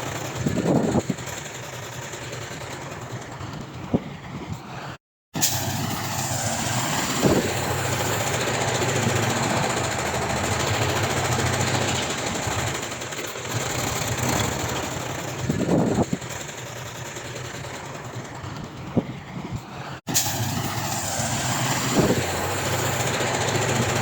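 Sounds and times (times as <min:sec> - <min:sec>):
diesel earthmoving machinery running: 0:00.0 - 0:24.0.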